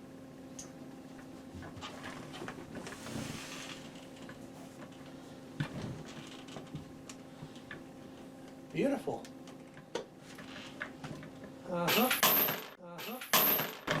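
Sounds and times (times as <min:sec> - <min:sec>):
steady low hum: 0:00.0 - 0:13.6
office chair clicking and creaking: 0:05.6 - 0:06.8.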